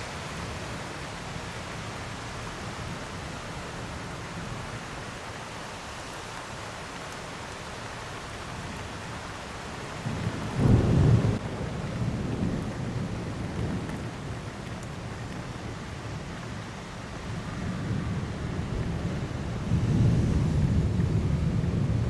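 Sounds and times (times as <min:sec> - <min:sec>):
heavy rain falling: 0:00.0 - 0:22.0
thunder rumbling: 0:09.8 - 0:16.5, 0:17.1 - 0:22.0.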